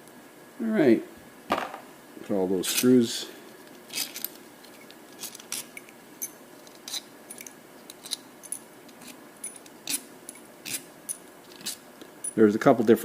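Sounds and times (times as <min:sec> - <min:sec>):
small metal screws clinking: 0:03.9 - 0:12.4.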